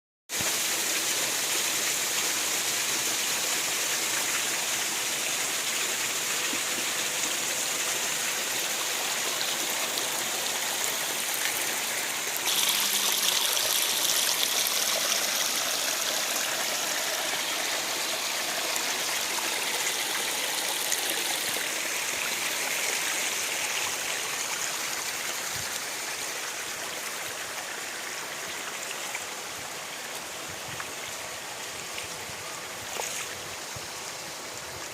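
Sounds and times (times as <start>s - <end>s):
waterfall rushing: 0.9s - 26.2s.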